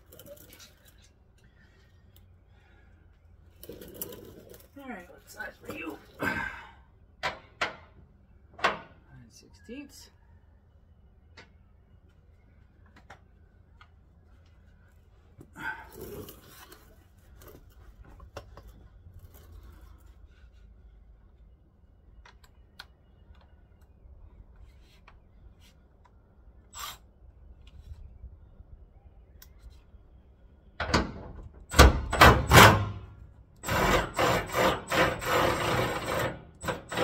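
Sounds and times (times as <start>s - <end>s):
loud breath: 6.2s - 6.9s.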